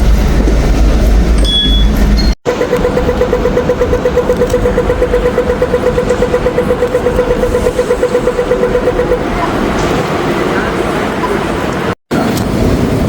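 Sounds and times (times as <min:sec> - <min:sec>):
steady rumble: 0:00.0 - 0:13.0
rapid electronic warning beeps: 0:01.4 - 0:09.6.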